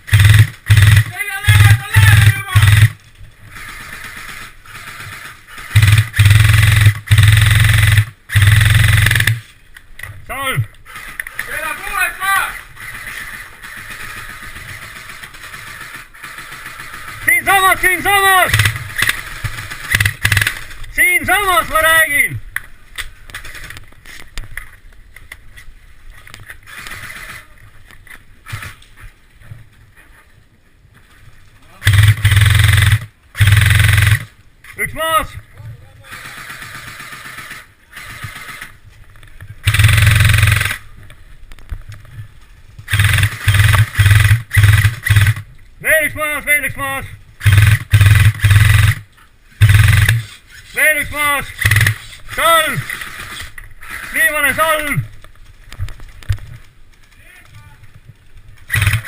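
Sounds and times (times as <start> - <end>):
airsoft gun firing full auto: 0.0 - 9.4, 12.8 - 20.7, 26.7 - 27.5, 31.8 - 34.3, 36.1 - 38.8, 39.6 - 40.9, 42.9 - 45.5, 47.4 - 50.3, 51.6 - 54.9, 58.7 - 59.0.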